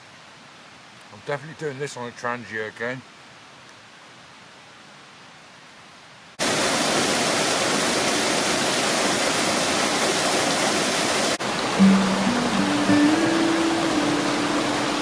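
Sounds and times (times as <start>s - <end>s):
faint outdoor background: 0.0s - 6.4s, 11.4s - 15.0s
waterfall rushing: 6.4s - 15.0s.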